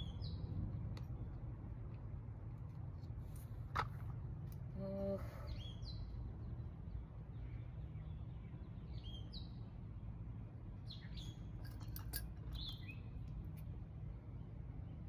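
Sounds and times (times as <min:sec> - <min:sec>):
birds chirping: 0:04.8 - 0:09.7, 0:10.8 - 0:13.3.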